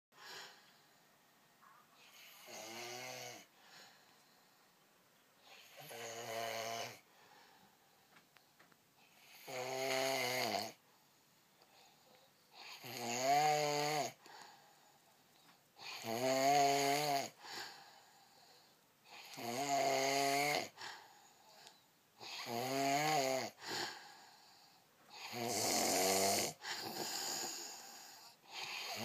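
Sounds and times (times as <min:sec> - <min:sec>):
man snoring: 0:02.1 - 0:03.5, 0:05.5 - 0:07.0, 0:09.2 - 0:10.8, 0:12.6 - 0:14.2, 0:15.8 - 0:17.4, 0:19.1 - 0:20.8, 0:22.2 - 0:24.5, 0:25.1 - 0:29.0.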